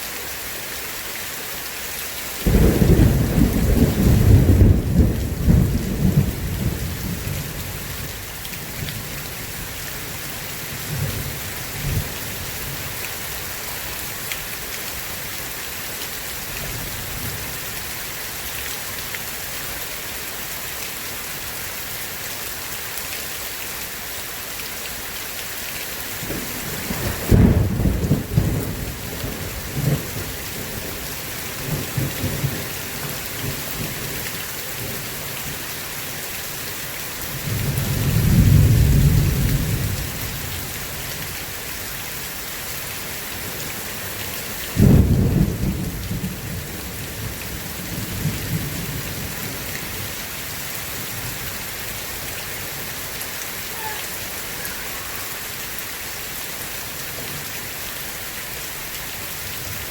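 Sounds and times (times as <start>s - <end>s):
heavy rain: 0.0s - 59.9s
thunder claps and rumbles: 2.4s - 9.1s, 26.1s - 35.6s, 37.3s - 40.9s, 44.7s - 50.2s.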